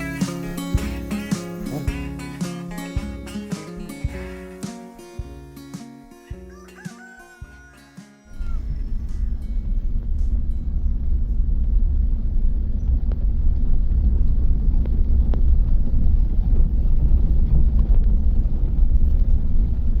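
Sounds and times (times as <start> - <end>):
low rumbling noise: 8.4 - 20.0.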